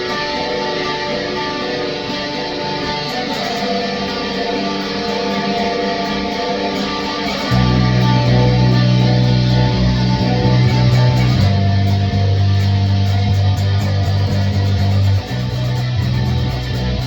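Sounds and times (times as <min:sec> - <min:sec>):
band playing guitars: 0:00.0 - 0:17.0
loud low bass notes: 0:07.5 - 0:17.0.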